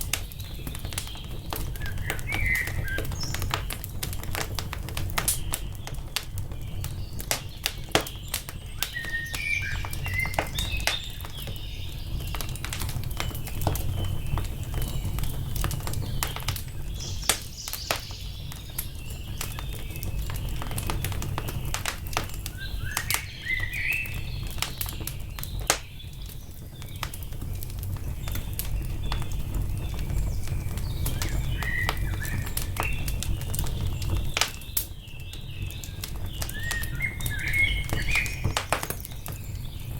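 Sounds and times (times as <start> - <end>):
birds chirping: 0.0 - 39.9
wood fire crackling and popping: 0.0 - 39.9.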